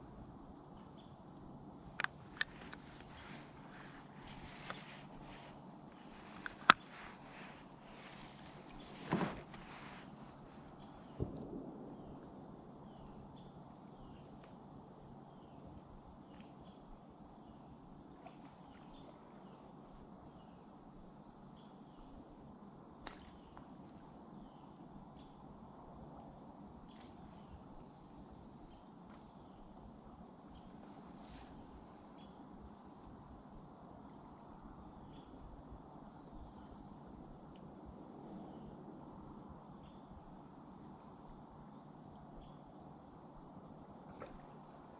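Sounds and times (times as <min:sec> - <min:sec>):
crickets chirping: 0:00.0 - 0:44.9
soft hiss: 0:01.6 - 0:14.8, 0:26.4 - 0:38.6
thump: 0:07.4 - 0:10.1, 0:11.1 - 0:11.7.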